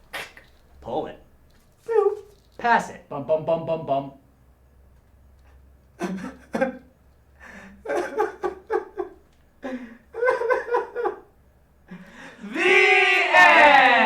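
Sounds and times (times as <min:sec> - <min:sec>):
person laughing: 0:06.0 - 0:06.9, 0:07.5 - 0:11.3
person yelling: 0:12.4 - 0:14.0.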